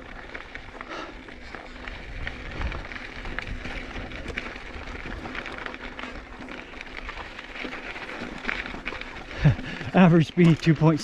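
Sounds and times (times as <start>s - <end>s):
bike clicks and rattles: 0.0s - 11.0s
tyres crunching over gravel: 0.0s - 11.0s
wind buffeting microphone: 1.9s - 5.3s.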